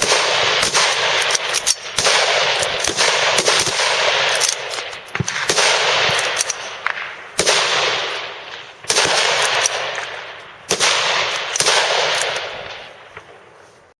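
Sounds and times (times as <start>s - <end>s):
rifle shots with rolling echo: 0.0s - 13.8s.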